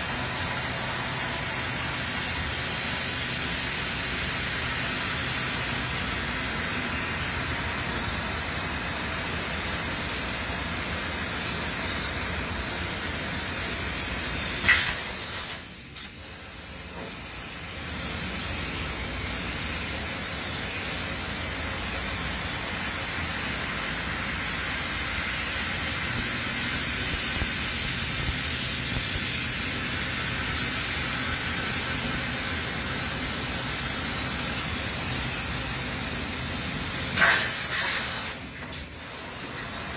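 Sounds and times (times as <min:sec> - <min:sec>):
hissing factory machinery: 0:00.0 - 0:39.9
short loud high hiss: 0:14.6 - 0:16.2, 0:37.1 - 0:38.9.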